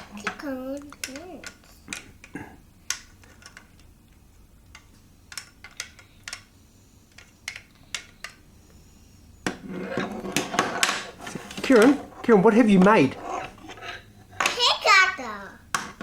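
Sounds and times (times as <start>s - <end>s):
plastic bricks clicking together: 4.7s - 6.5s.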